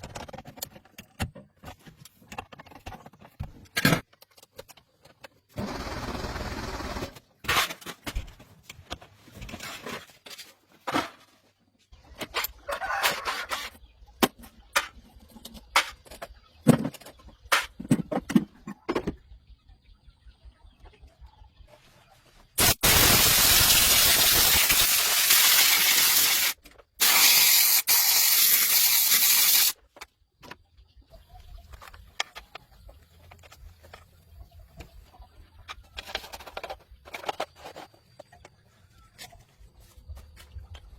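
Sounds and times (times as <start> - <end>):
knocks and clatter of handling: 0.0 - 5.5, 7.4 - 19.3, 35.6 - 40.9
compressed air spraying hiss: 22.6 - 29.8.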